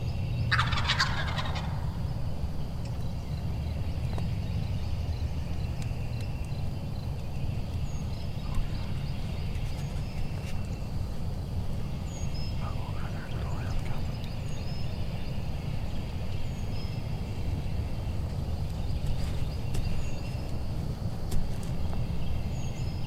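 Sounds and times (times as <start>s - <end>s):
low steady rumble: 0.0s - 23.0s
small birds chirping: 0.0s - 23.0s
distant turkey gobbling: 0.5s - 2.0s.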